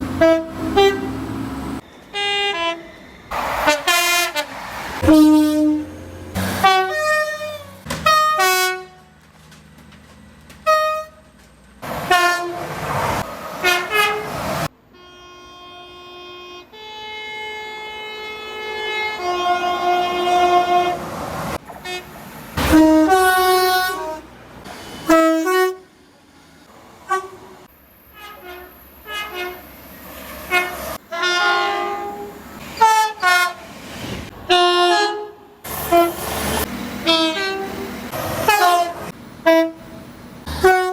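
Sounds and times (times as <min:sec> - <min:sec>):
train horn blasts: 0:00.0 - 0:03.0, 0:03.6 - 0:09.2, 0:10.6 - 0:11.3, 0:12.0 - 0:12.8, 0:13.6 - 0:21.1, 0:21.8 - 0:24.4, 0:25.0 - 0:26.0, 0:27.0 - 0:29.7, 0:30.4 - 0:33.7, 0:34.3 - 0:40.9.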